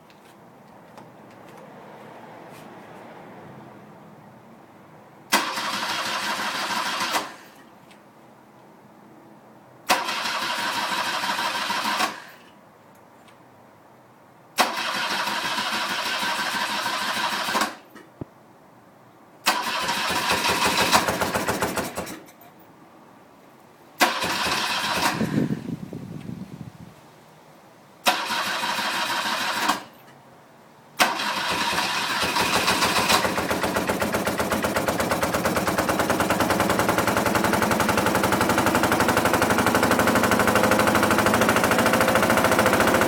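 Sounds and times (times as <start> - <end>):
motorcycle electric starter cranking: 5.3 - 7.7, 9.9 - 12.5, 14.6 - 17.9, 19.4 - 22.4, 24.0 - 25.7, 28.0 - 30.2, 31.0 - 43.0.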